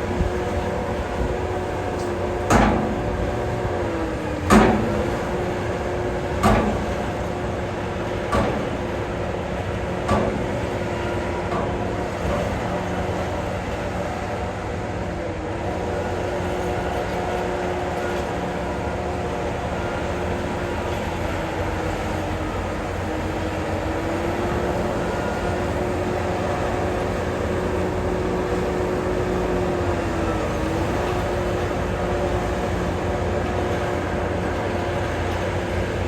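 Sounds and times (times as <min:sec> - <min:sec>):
diesel machinery engine running: 0:00.0 - 0:36.0
loud metallic clanks: 0:02.0 - 0:03.5, 0:04.4 - 0:05.6, 0:06.3 - 0:07.3, 0:08.2 - 0:12.9.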